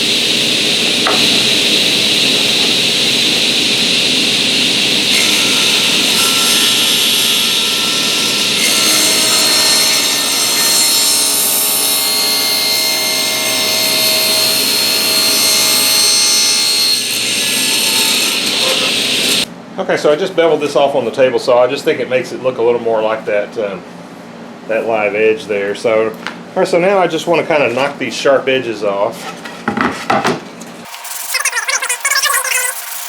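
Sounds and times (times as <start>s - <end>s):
table saw cutting wood: 0.0s - 19.5s, 30.8s - 33.0s.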